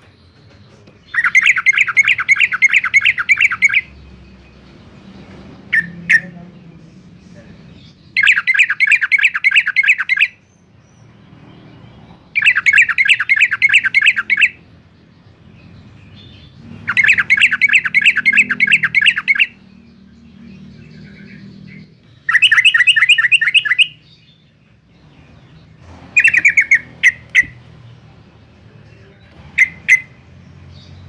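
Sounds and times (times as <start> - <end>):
bird chattering song: 0.0 - 31.0.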